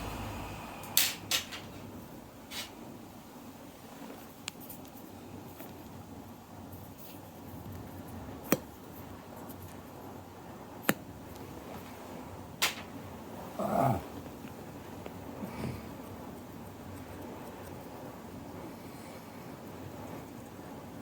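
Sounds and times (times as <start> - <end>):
person snoring: 13.6 - 14.1.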